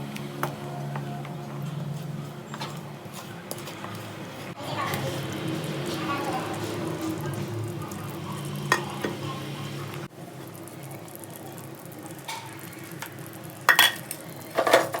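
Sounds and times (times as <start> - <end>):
food sizzling in a pot: 4.5 - 15.0.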